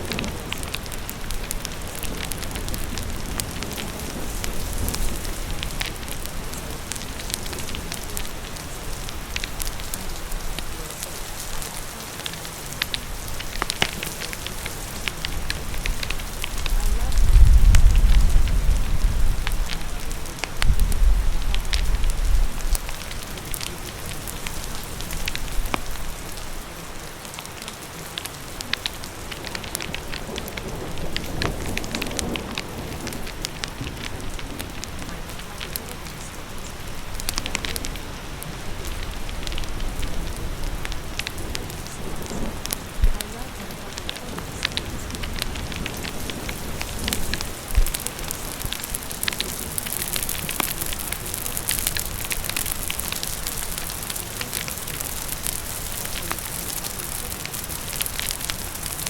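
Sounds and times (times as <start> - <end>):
fire crackling: 0.0 - 59.0
rain hissing: 0.0 - 59.0
low rumble: 15.1 - 23.0.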